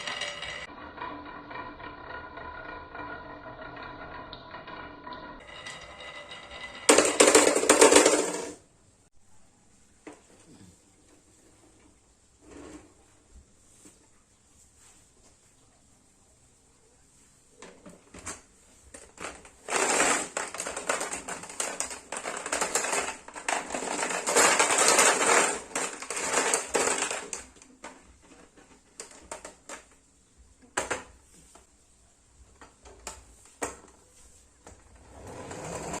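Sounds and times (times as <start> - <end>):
marbles clattering down wooden run: 0.0 - 8.6, 19.2 - 27.6.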